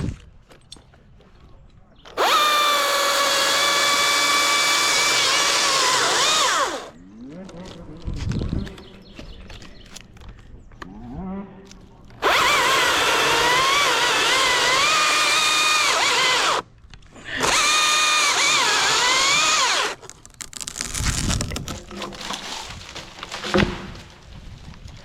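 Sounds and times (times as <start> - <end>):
chainsaw cutting wood: 2.2 - 7.0, 12.2 - 16.7, 17.3 - 24.1.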